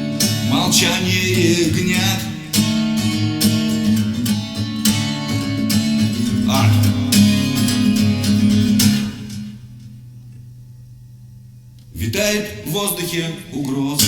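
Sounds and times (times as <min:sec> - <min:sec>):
guitar strumming: 0:00.0 - 0:14.0
person singing: 0:00.3 - 0:03.3, 0:06.3 - 0:07.9.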